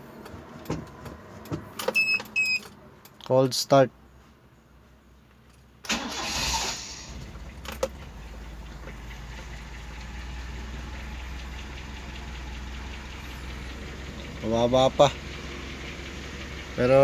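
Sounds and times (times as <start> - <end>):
engine cranking and idling: 5.8 - 17.0.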